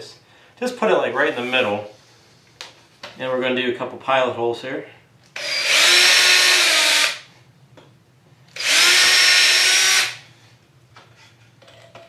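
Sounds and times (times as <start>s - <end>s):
cordless drill boring into wood: 5.4s - 7.2s, 8.6s - 10.2s.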